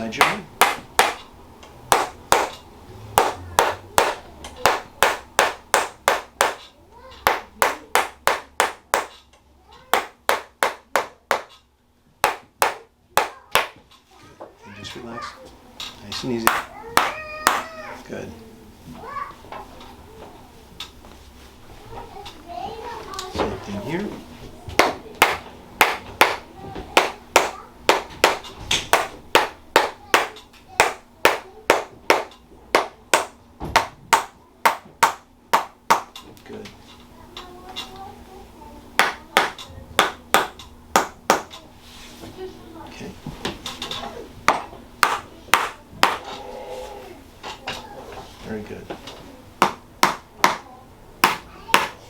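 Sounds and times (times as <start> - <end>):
sharp hand slaps: 0.2 - 1.2, 16.5 - 17.7.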